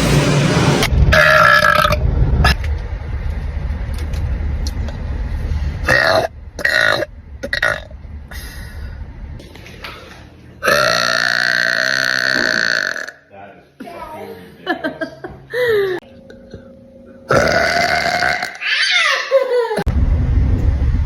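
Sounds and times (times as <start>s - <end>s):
person burping loudly: 5.9s - 7.8s, 10.6s - 13.2s, 17.3s - 18.6s.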